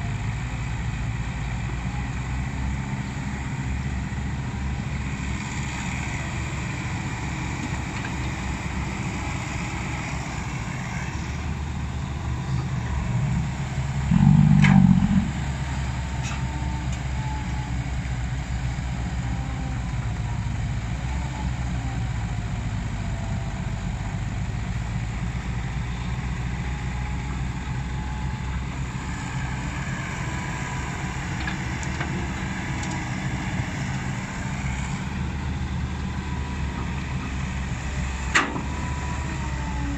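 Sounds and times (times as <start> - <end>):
excavator diesel engine running: 0.0 - 39.9
whine sliding in pitch: 13.0 - 15.6.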